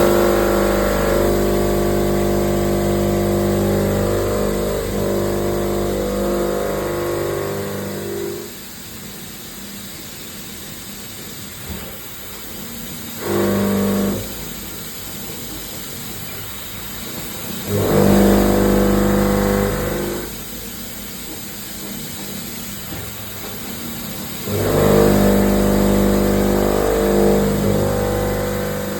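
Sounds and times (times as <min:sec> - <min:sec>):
machining centre humming whine: 0:00.0 - 0:08.5, 0:24.4 - 0:28.9.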